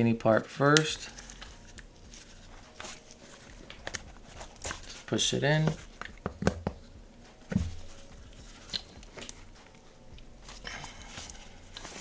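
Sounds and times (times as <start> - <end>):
dull knock: 6.1 - 6.8, 7.5 - 7.8.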